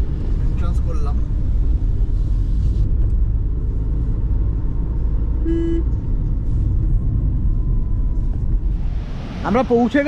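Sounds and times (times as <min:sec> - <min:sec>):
car engine and road noise: 0:00.0 - 0:10.0
vehicle horn toot: 0:05.4 - 0:05.9.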